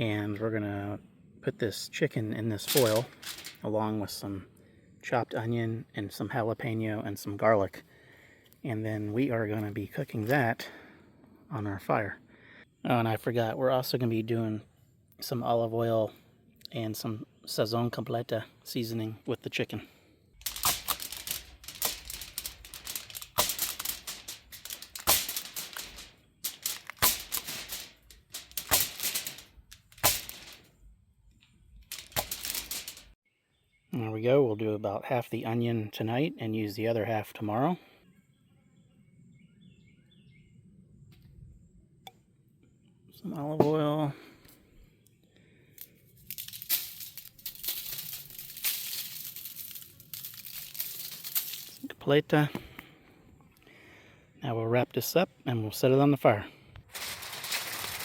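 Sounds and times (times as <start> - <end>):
aluminium foil crinkling: 2.6 - 3.7, 20.4 - 30.7, 31.8 - 33.2, 45.9 - 51.9, 56.8 - 58.0.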